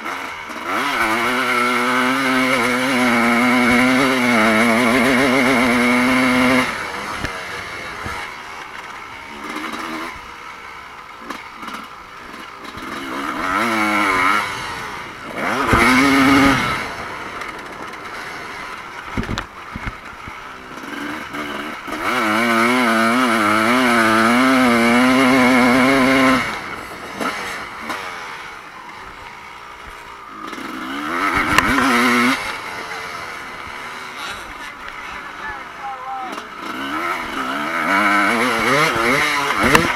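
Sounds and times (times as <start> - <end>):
distant motorbikes: 0.0 - 39.9
motocross bikes revving past: 0.0 - 39.9.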